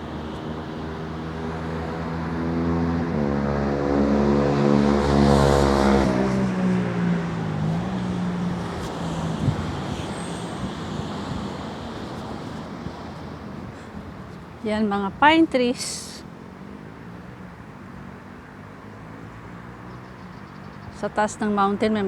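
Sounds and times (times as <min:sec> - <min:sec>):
vehicle driving past: 0:00.0 - 0:14.4.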